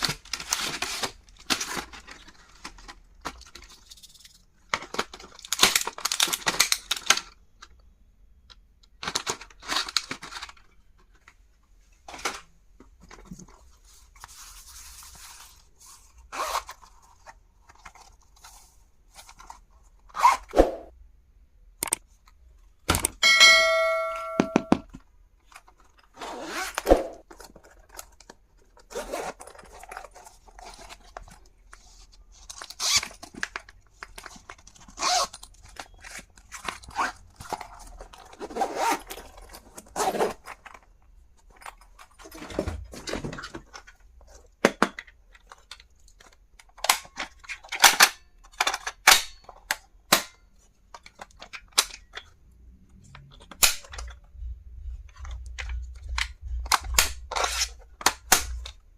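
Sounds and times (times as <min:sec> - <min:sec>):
packaging crinkling and tearing: 0:00.0 - 0:07.4, 0:08.9 - 0:11.3.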